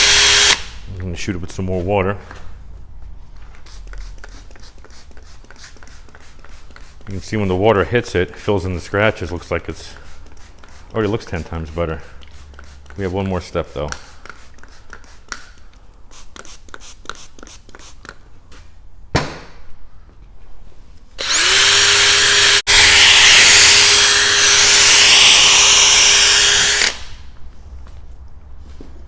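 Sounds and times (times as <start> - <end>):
cordless drill spinning sanding disc: 0.0 - 0.6, 21.2 - 27.1.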